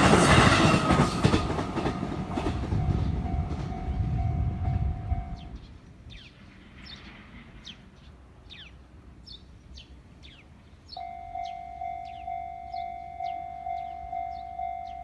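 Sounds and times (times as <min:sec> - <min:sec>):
level crossing warning bell: 0:02.3 - 0:05.5, 0:11.0 - 0:15.0
small birds chirping: 0:03.0 - 0:15.0.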